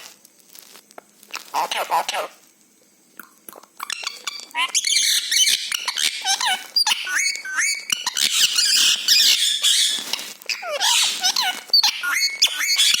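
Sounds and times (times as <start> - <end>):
parrot squawks: 1.4 - 2.4, 3.8 - 13.0
parrot whistling: 3.8 - 13.0.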